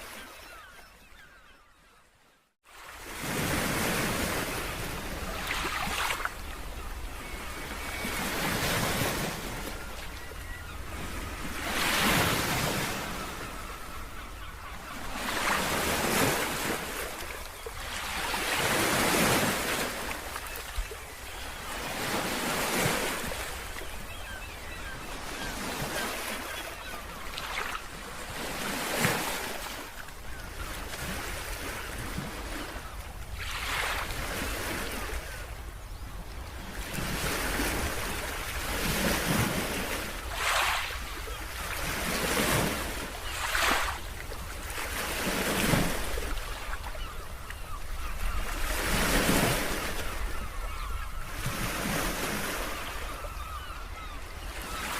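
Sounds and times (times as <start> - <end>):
ocean waves breaking on shore: 2.6 - 54.9.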